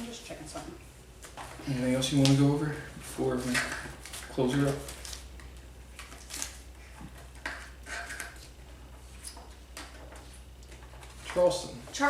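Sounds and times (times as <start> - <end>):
paper rustling: 3.0 - 6.6.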